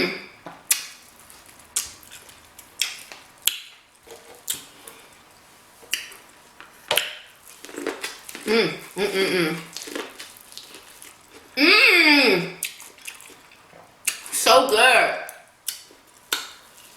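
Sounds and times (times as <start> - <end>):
lip smacks and chewing: 0.7 - 8.5, 12.6 - 14.4, 15.3 - 16.9.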